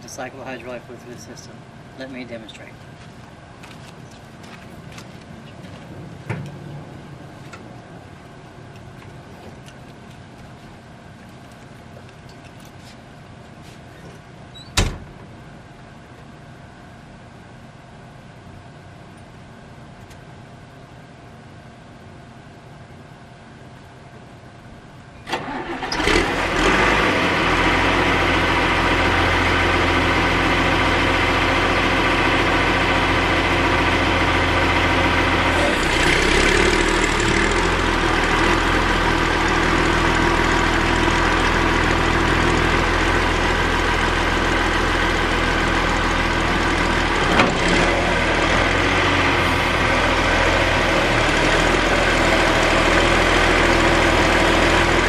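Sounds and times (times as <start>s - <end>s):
diesel engine starting and idling: 25.2s - 55.0s.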